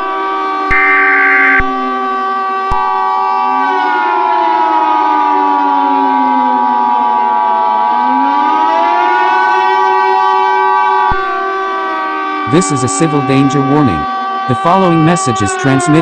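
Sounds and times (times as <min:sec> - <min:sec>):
sirens wailing: 0:00.0 - 0:16.0
steady alert tone: 0:00.7 - 0:01.8.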